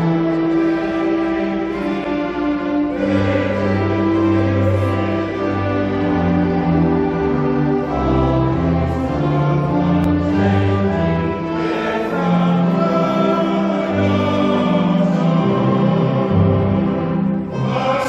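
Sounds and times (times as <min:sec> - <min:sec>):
choir singing with accompaniment: 0:00.0 - 0:18.0.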